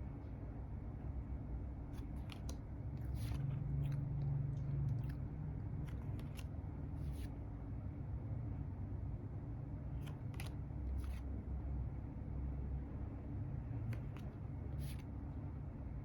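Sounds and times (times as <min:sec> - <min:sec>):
steady low hum: 0:00.0 - 0:16.0
light scrapes of cards: 0:02.0 - 0:04.2, 0:05.8 - 0:07.4, 0:10.0 - 0:11.3, 0:13.9 - 0:15.1.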